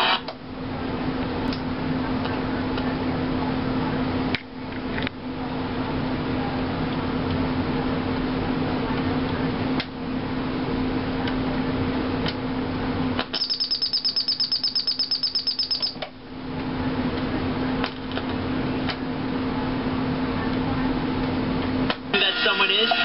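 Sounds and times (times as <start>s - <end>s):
rapid alarm beeping: 13.4s - 16.0s
radio hiss: 22.1s - 23.0s.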